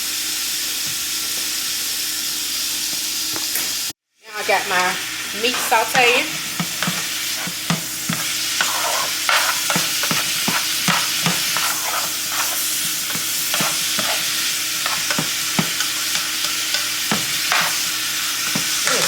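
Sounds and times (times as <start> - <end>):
meat and peppers sizzling in skillet: 0.0 - 19.0
stirring scrapes against pan: 5.4 - 19.0.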